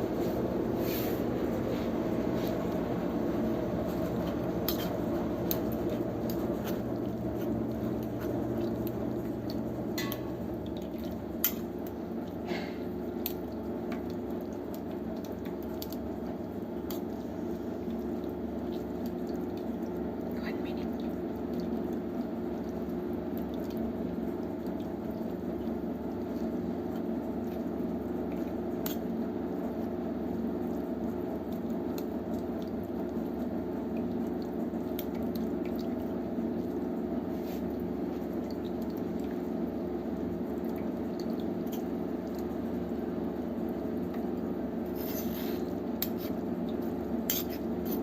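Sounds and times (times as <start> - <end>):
water bubbling in a pot: 0.0 - 48.0.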